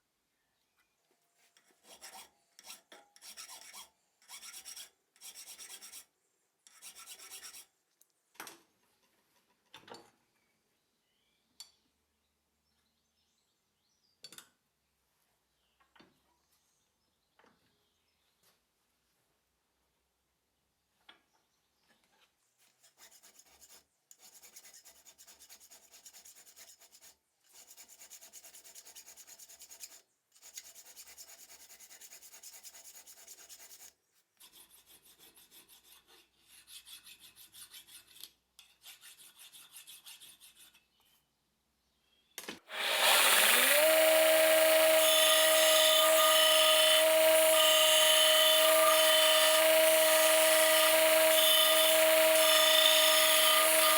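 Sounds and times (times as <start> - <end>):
file strokes on metal: 1.4 - 6.1, 6.7 - 7.7, 22.6 - 41.0, 42.7 - 53.9
electric power tool motor: 42.7 - 53.9.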